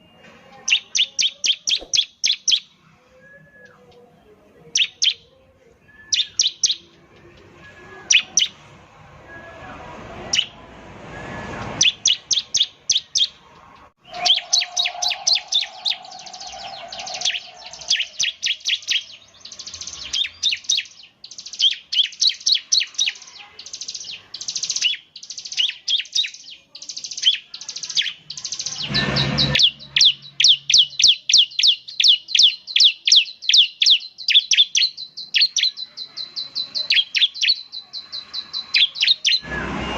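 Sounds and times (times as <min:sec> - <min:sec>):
bird singing sharp chipping notes: 0:14.0 - 0:39.9.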